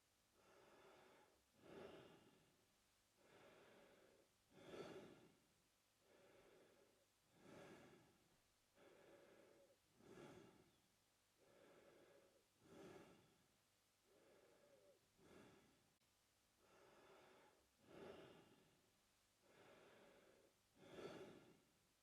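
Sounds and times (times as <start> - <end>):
man breathing through mouth: 3.2 - 5.4, 6.0 - 8.2, 8.8 - 10.8, 11.4 - 13.4, 14.1 - 15.8, 16.6 - 18.7, 19.4 - 21.6.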